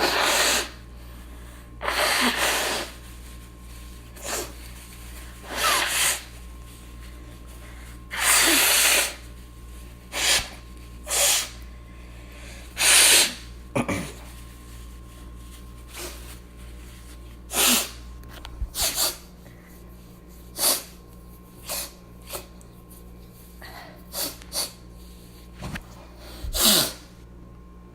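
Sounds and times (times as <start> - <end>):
person blowing nose: 0.0 - 3.1, 4.1 - 6.4, 7.1 - 9.4, 10.1 - 11.6, 12.3 - 14.4, 15.9 - 16.4, 17.5 - 18.1, 18.7 - 19.3, 20.5 - 21.0, 21.6 - 22.5, 24.1 - 24.8, 26.2 - 27.1.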